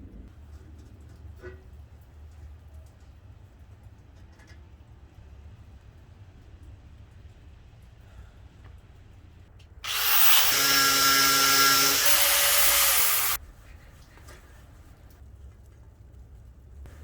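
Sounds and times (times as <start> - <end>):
electric drill motor running: 9.8 - 13.4.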